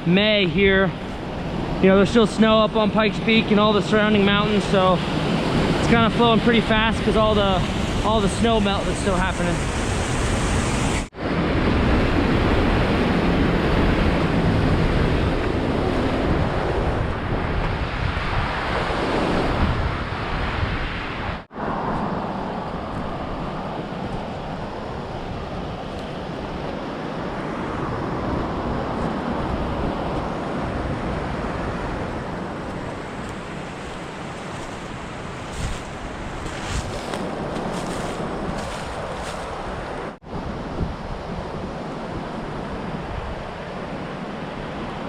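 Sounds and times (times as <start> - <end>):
fast-flowing creek: 3.5 - 11.1, 32.5 - 40.2.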